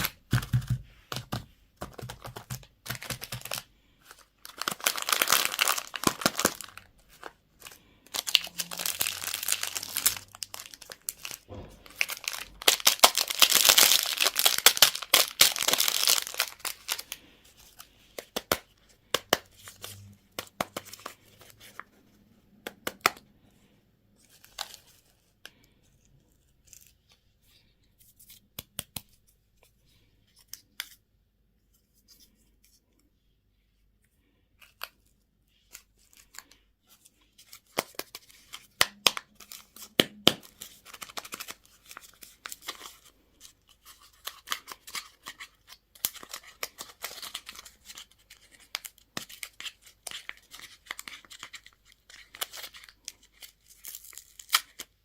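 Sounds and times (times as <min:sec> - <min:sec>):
wrappers clicking and tapping: 0:00.0 - 0:17.1
packaging tearing and crinkling: 0:02.0 - 0:03.7, 0:04.4 - 0:17.1, 0:48.7 - 0:55.0.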